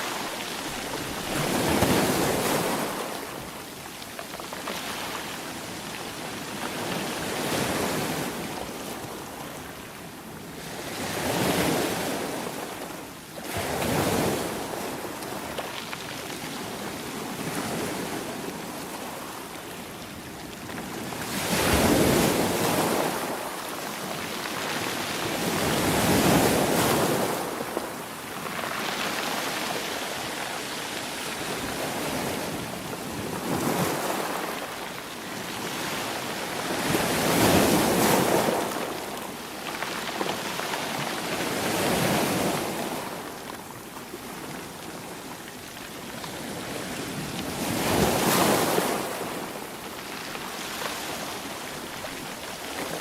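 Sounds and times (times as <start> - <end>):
ocean waves breaking on shore: 0.0 - 53.0.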